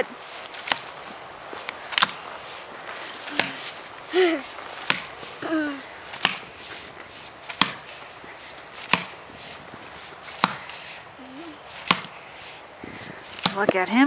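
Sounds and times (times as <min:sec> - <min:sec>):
axe chopping into tree trunk: 0:01.9 - 0:02.2, 0:04.8 - 0:05.1, 0:06.1 - 0:06.5, 0:07.5 - 0:08.0, 0:08.8 - 0:09.2, 0:10.3 - 0:10.9, 0:11.7 - 0:12.2, 0:13.3 - 0:13.7.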